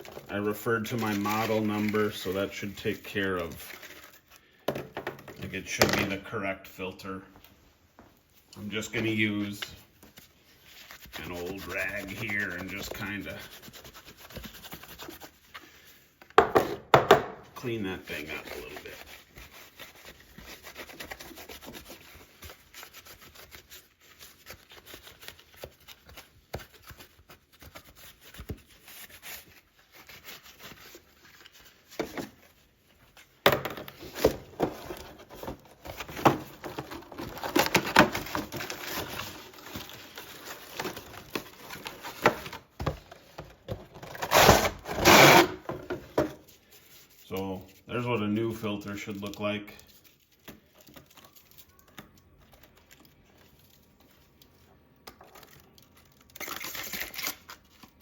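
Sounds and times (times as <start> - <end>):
rag scrubbing inside humidifier: 11.2 - 15.5.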